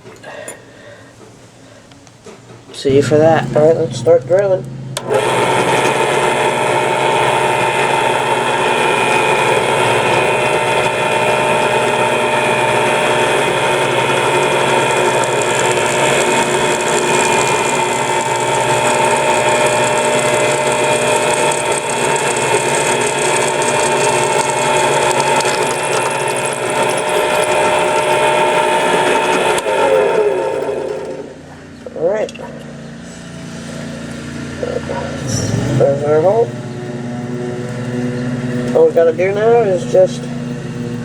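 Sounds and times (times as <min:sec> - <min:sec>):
electric drill whining: 0:04.6 - 0:31.4.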